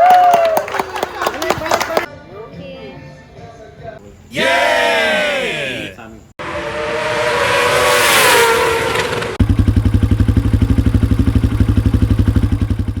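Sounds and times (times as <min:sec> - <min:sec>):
loud shouting: 0:04.3 - 0:06.1
motorcycle engine running: 0:06.5 - 0:13.0.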